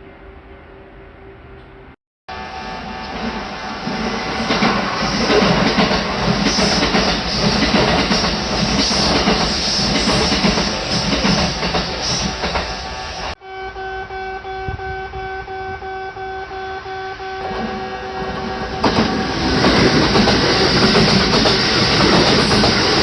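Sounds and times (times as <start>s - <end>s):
train wheels clattering over rails: 3.0s - 13.3s, 18.4s - 23.0s.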